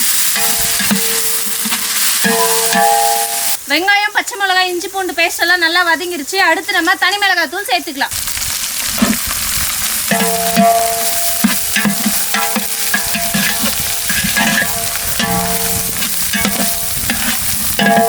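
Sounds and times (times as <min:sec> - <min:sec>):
ladle stirring and scraping pot: 0:00.0 - 0:03.6, 0:08.1 - 0:18.0
food sizzling in hot oil: 0:00.0 - 0:18.0
ringing tone: 0:02.2 - 0:03.6.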